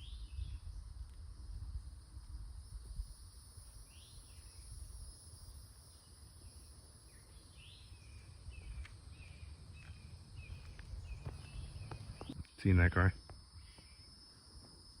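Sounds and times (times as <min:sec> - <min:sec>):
wind rumble on microphone: 0:00.0 - 0:05.6, 0:08.5 - 0:12.4
insects droning: 0:00.0 - 0:15.0
bird chirping: 0:05.9 - 0:14.2.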